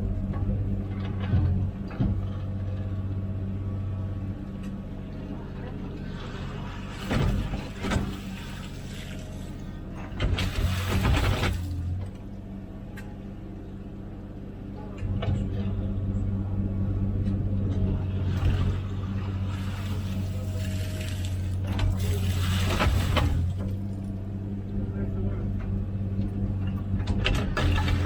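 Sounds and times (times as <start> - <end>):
excavator diesel engine running: 0.0 - 28.0.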